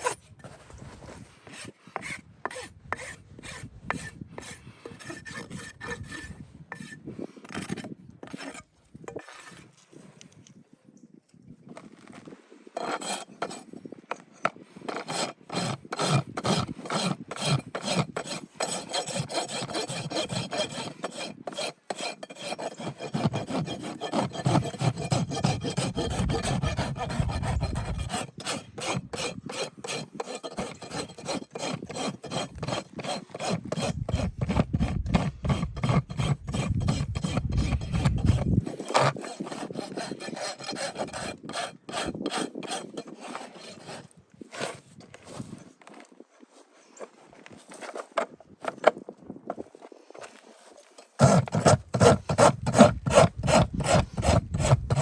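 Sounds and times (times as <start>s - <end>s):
rasp scraping a hoof: 0.0s - 10.2s, 11.7s - 55.0s.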